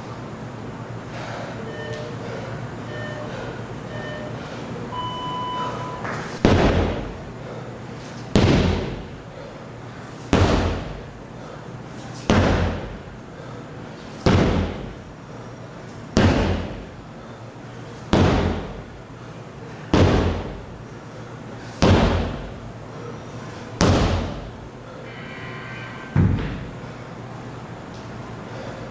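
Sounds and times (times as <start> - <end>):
short electronic beep: 1.7 - 2.1, 2.9 - 6.1, 25.1 - 26.3
sledgehammer strikes: 8.3 - 9.0, 26.1 - 26.8.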